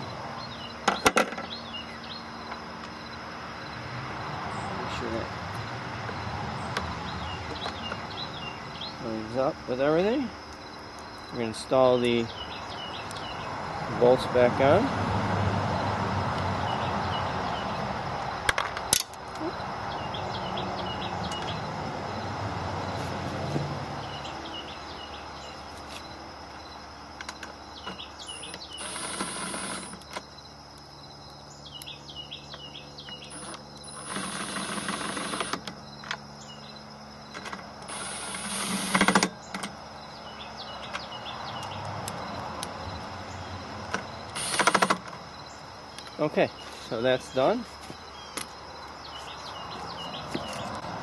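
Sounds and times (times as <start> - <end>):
rapid ratchet clicking: 37.9 - 39.3, 44.3 - 45.0.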